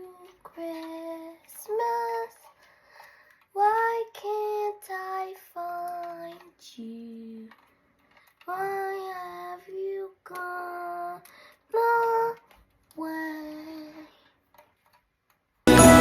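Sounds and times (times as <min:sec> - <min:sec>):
high voices singing: 0:15.7 - 0:16.0.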